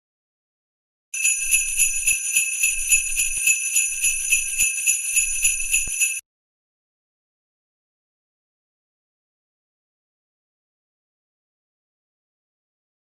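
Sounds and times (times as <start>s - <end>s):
sleigh bells jingling: 1.2s - 6.2s.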